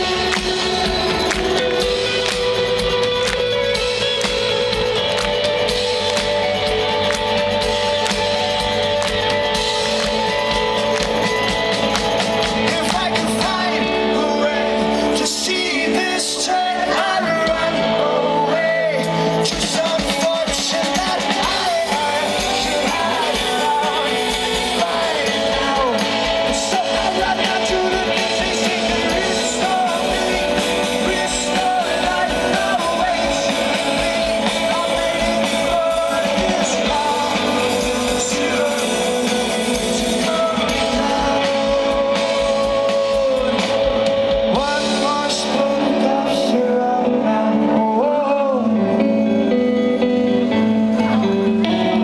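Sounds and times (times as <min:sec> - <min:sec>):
drum beat: 0:00.0 - 0:13.7, 0:19.6 - 0:44.8
electric guitar chords: 0:00.0 - 0:52.0
lead singer singing: 0:00.0 - 0:52.0
live rock band: 0:00.0 - 0:52.0.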